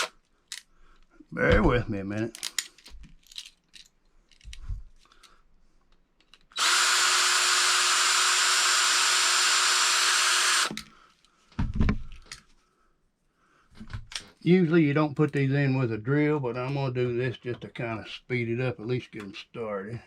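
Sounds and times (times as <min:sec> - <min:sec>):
electric drill running: 0:06.6 - 0:10.8.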